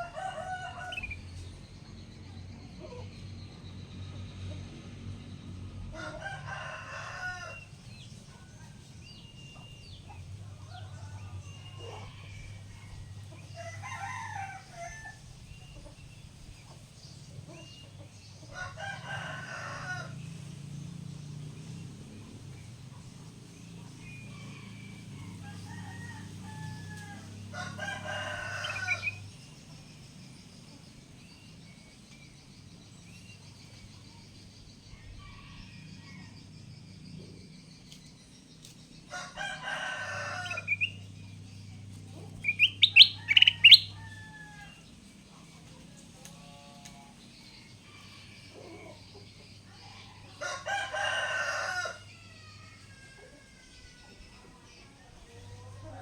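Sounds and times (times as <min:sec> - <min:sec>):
rooster crowing: 0:00.0 - 0:01.2, 0:05.9 - 0:07.8, 0:10.7 - 0:15.2, 0:18.5 - 0:20.3, 0:24.0 - 0:29.3, 0:39.1 - 0:41.0, 0:42.3 - 0:44.9, 0:50.2 - 0:54.1.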